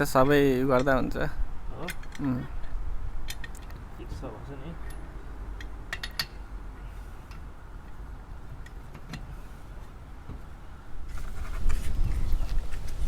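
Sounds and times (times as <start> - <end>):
metallic clicks of wheel nuts: 1.8 - 3.8, 4.8 - 6.5, 7.2 - 9.4.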